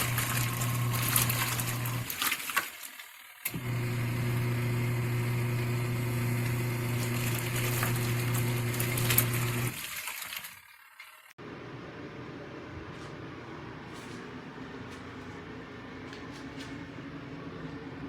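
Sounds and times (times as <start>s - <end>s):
washing machine motor humming: 0.0s - 18.0s
water swishing: 7.0s - 11.3s.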